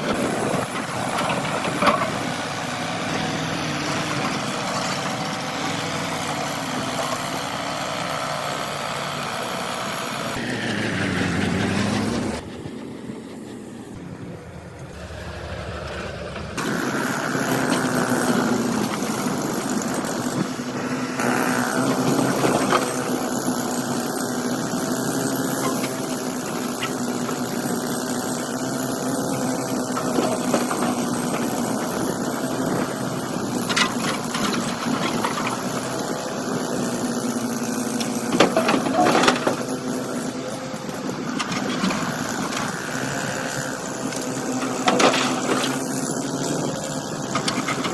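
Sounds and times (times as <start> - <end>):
excavator diesel engine: 0.0 - 47.9
bucket scraping rock: 41.4 - 46.5.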